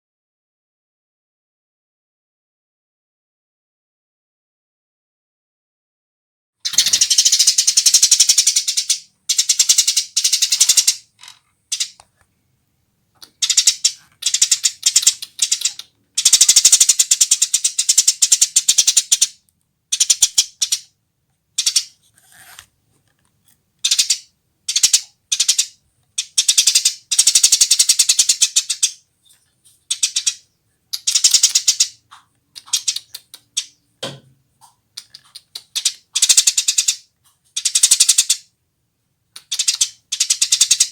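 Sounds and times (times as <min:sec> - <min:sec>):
sparrow chattering chirps: 0:06.6 - 0:11.1, 0:11.7 - 0:12.0, 0:13.3 - 0:20.9, 0:21.6 - 0:22.0, 0:23.8 - 0:29.0, 0:29.9 - 0:33.9, 0:35.0 - 0:38.5, 0:39.4 - 0:40.9.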